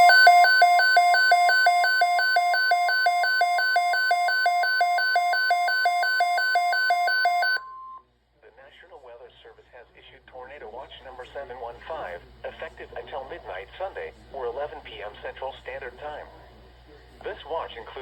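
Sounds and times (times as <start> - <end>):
warbling electronic alarm beeping: 0.0 - 7.9
steady warning alarm tone: 0.0 - 8.0.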